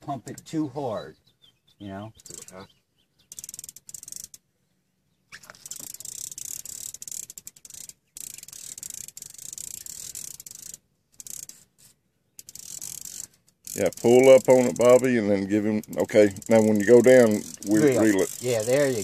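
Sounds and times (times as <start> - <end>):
fishing reel clicking: 3.3 - 4.4, 5.4 - 11.7, 12.4 - 19.0.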